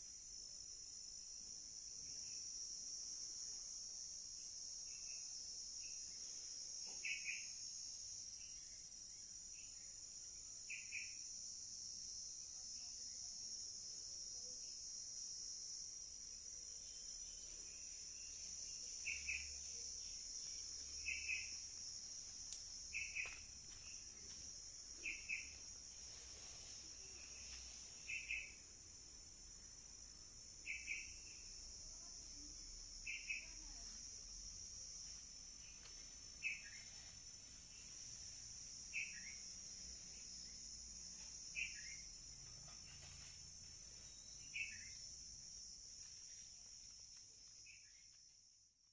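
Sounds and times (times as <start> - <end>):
crickets trilling: 0.0 - 48.9.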